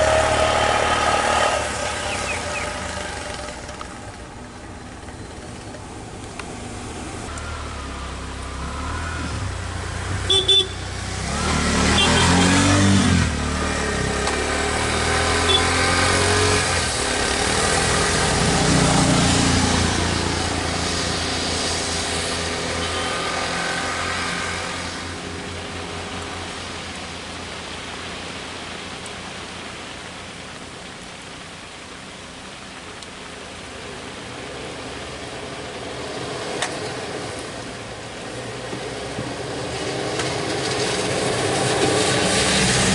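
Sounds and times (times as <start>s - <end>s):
vehicles passing: 0.0s - 42.9s.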